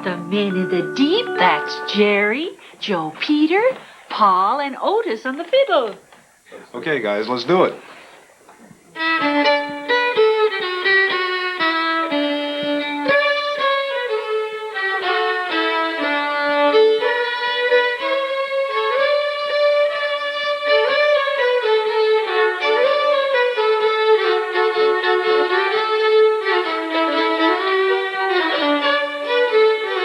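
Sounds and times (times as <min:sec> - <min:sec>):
sustained low drone note: 0:00.0 - 0:02.3
fiddles playing lively tune: 0:00.0 - 0:03.8, 0:08.9 - 0:30.0.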